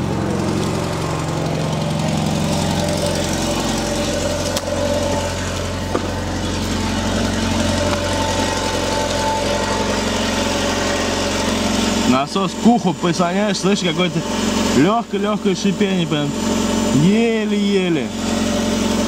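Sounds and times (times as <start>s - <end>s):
car engine idling: 0.0s - 19.0s.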